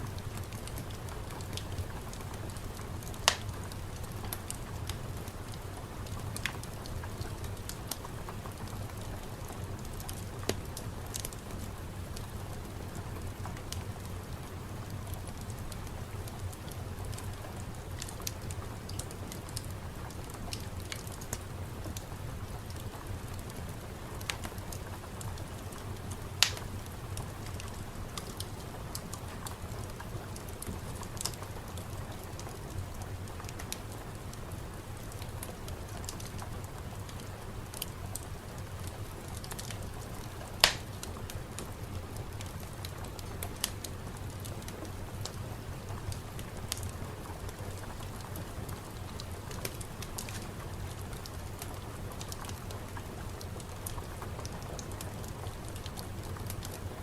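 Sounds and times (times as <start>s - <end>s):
sharp ticks and pops: 0.3s - 9.3s, 26.4s - 33.8s, 37.2s - 45.4s, 46.1s - 47.0s.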